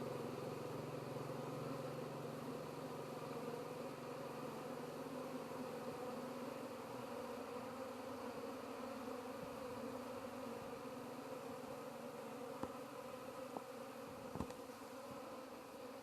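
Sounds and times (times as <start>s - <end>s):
honey bees buzzing: 0.0s - 16.0s.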